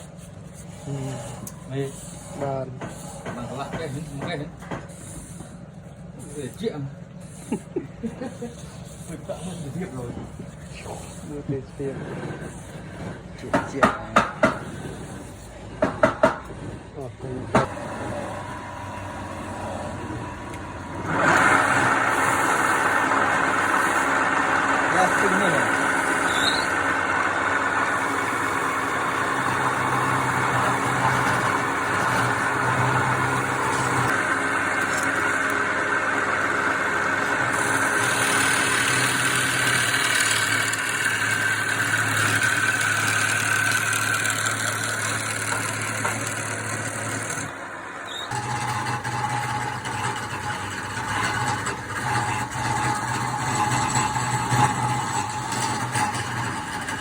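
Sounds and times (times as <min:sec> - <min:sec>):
motor whirring and humming: 0:00.0 - 0:15.8, 0:16.4 - 0:57.0.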